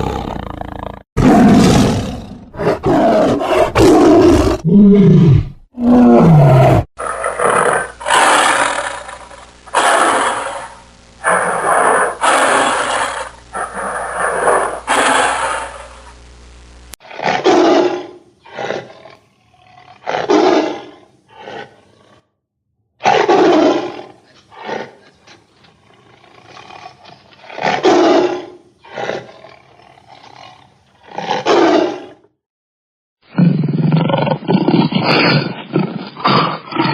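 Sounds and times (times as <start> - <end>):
tigers roaring: 1.2 - 16.0, 23.0 - 32.2
low hum: 7.2 - 12.3, 13.2 - 17.0.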